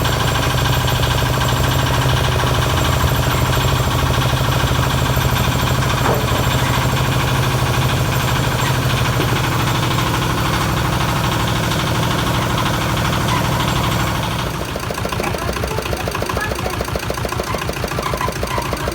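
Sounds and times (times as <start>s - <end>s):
washing machine humming: 0.0s - 18.9s.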